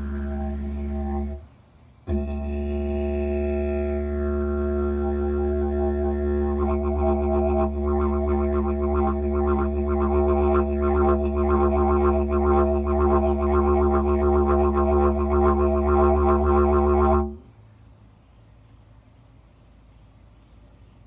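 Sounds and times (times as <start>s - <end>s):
didgeridoo drone: 0.0s - 1.4s, 2.1s - 17.4s.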